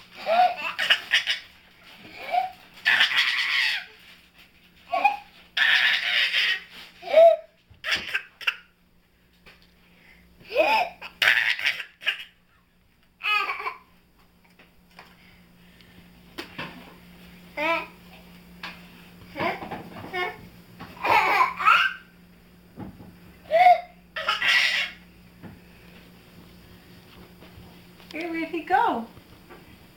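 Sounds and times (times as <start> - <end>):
baby laughing: 0.2 - 4.0, 4.9 - 8.7, 10.5 - 12.4, 13.2 - 13.9, 21.0 - 22.1, 23.5 - 25.0.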